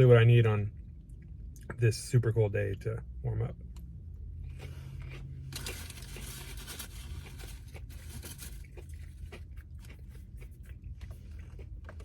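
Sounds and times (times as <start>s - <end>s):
steady low hum: 0.0s - 12.0s
paper wrapper crinkling: 5.5s - 9.1s.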